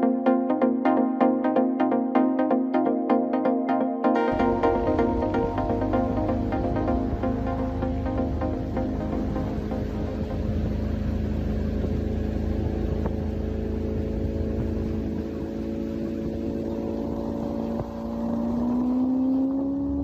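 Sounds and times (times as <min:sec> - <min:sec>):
boat motor running: 0:04.3 - 0:20.0.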